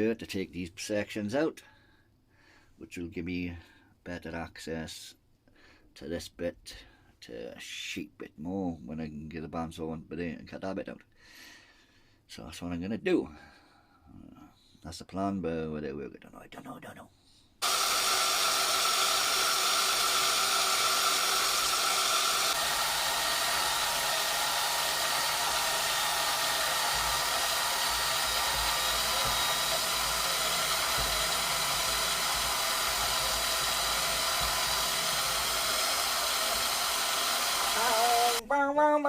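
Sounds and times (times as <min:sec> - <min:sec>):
bandsaw cutting steel: 0:17.6 - 0:38.4.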